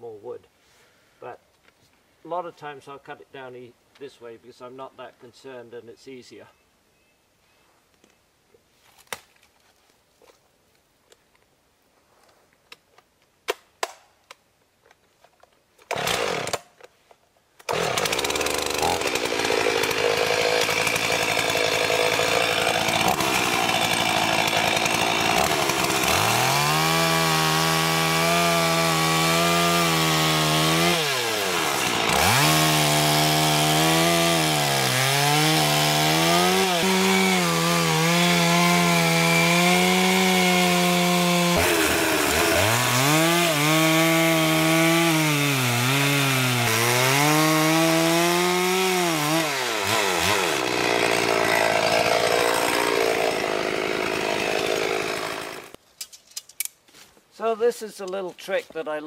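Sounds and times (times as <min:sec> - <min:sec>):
chainsaw cutting wood: 0:15.8 - 0:16.9, 0:17.6 - 0:55.8.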